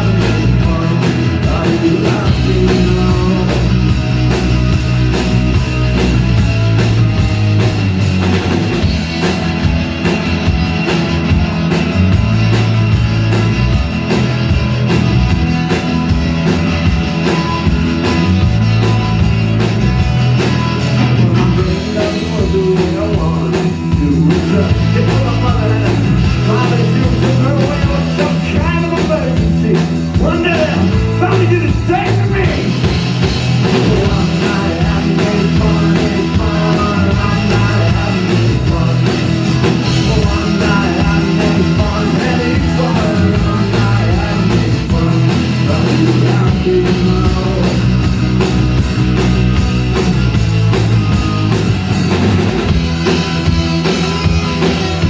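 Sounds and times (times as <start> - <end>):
person singing: 0.0 - 4.4, 21.1 - 32.9, 33.5 - 48.2
live rock band playing: 0.0 - 55.0.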